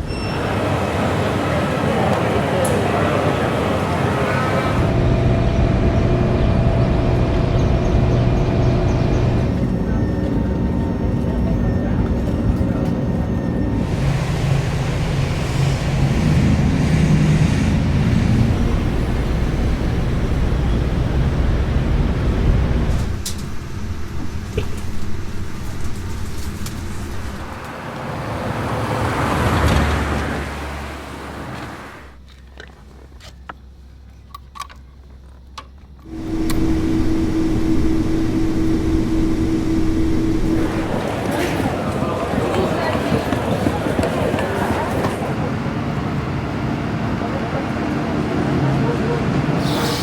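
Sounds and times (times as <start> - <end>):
traffic noise: 0.0 - 50.0
steady rumble with held tone: 4.8 - 16.8, 33.5 - 41.1.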